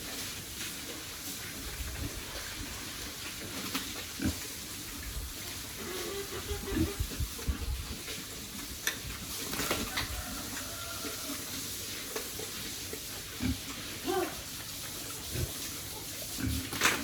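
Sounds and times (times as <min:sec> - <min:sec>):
pigs rustling wetly: 0:00.0 - 0:17.0
pigs grunting: 0:03.9 - 0:04.6, 0:05.5 - 0:07.6, 0:13.0 - 0:14.6.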